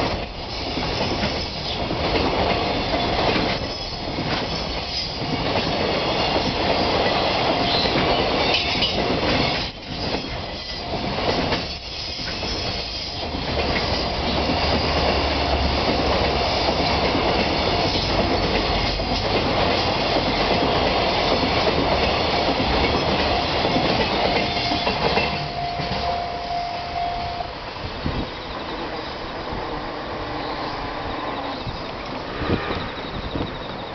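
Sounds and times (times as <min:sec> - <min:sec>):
wheels clattering over rail joints: 0:00.0 - 0:26.2
freight train rolling past: 0:00.0 - 0:33.9
steady whining tone: 0:23.3 - 0:33.9.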